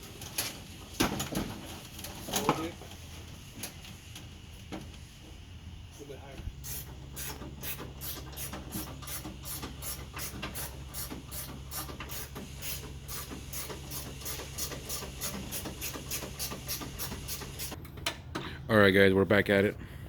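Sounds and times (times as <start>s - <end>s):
steady low hum: 0.0s - 20.0s
ratchet wrench rasping: 6.6s - 17.8s.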